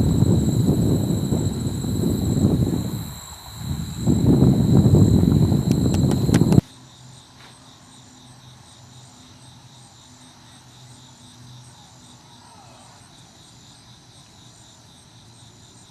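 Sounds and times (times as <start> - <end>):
faint low hum: 0.0 - 6.6
crickets chirping: 0.0 - 15.9.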